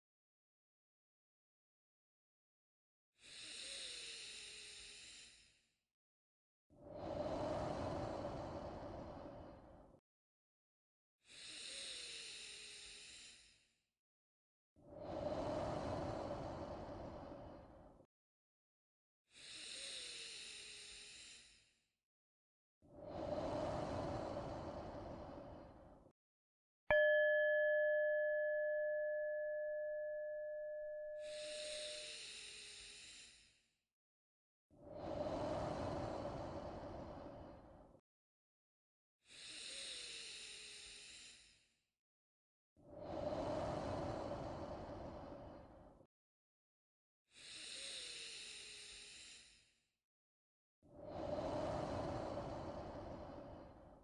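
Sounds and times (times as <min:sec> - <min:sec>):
person breathing deeply: 0:03.2 - 0:05.5, 0:06.8 - 0:09.9, 0:11.3 - 0:13.5, 0:14.9 - 0:18.0, 0:19.3 - 0:21.7, 0:22.9 - 0:26.1, 0:27.6 - 0:33.4, 0:34.8 - 0:38.0, 0:39.3 - 0:41.6, 0:42.9 - 0:46.0, 0:47.3 - 0:49.6, 0:50.9 - 0:54.0.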